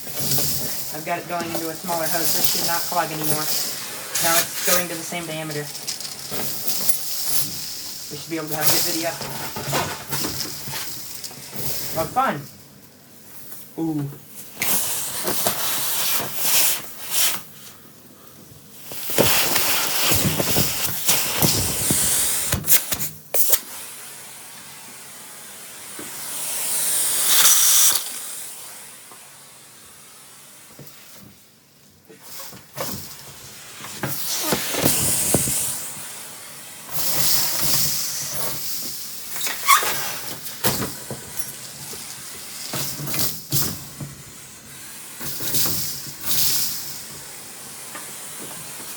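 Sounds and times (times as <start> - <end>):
vacuum hose sucking air: 0.0 - 12.2, 14.4 - 17.5, 18.8 - 31.2, 32.2 - 48.9
debris clicks and rattles: 5.5 - 7.7.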